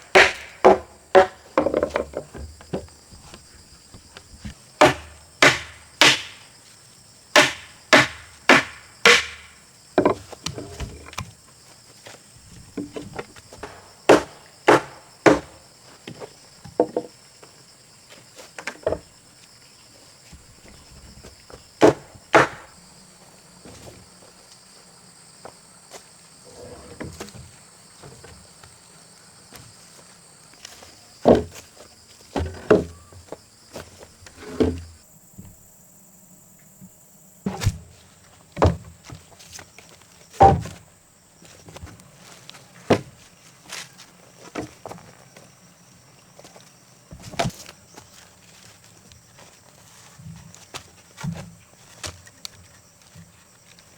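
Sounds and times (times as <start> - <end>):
tool striking timber: 0.0 - 2.8, 4.8 - 6.5, 7.4 - 10.2, 12.8 - 15.6, 21.8 - 22.7, 40.4 - 40.8
insects buzzing: 0.0 - 53.9.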